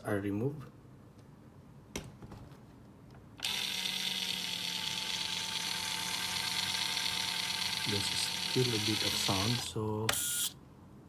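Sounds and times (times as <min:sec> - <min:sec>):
electric motor gear whine: 0:03.4 - 0:10.6.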